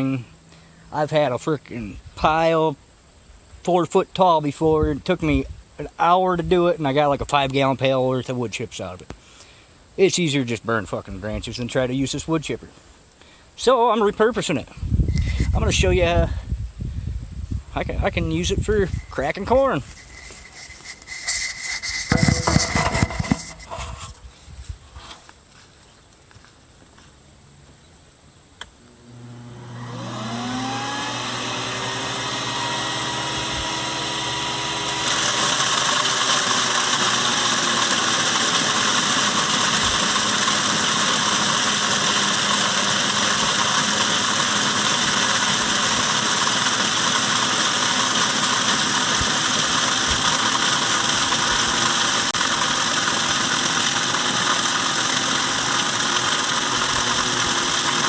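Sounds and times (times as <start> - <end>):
wood chipper motor whining: 14.9 - 15.8, 18.3 - 24.2, 28.8 - 58.0
corn cracking in chipper: 18.9 - 24.2, 30.0 - 58.0.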